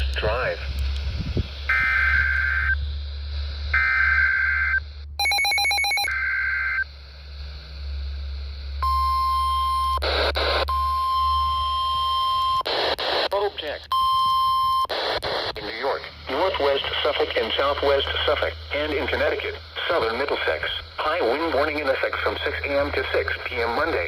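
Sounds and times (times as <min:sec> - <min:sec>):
warbling digital data bursts: 0:01.6 - 0:06.9
loud steady alert tone: 0:03.8 - 0:06.8.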